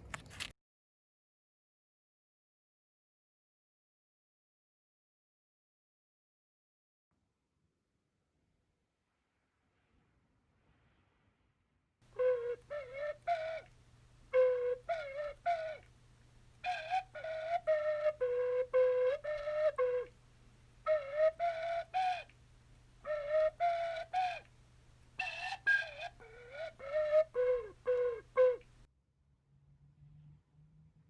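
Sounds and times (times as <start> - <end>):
flute-like whistling melody: 12.1 - 15.9, 16.6 - 20.2, 20.8 - 22.4, 23.0 - 24.5, 25.2 - 28.9.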